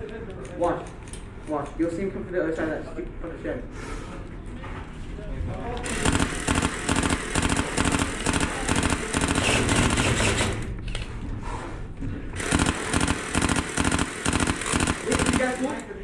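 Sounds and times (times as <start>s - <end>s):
airsoft gun firing rapid shots: 5.8s - 10.7s, 12.4s - 15.9s.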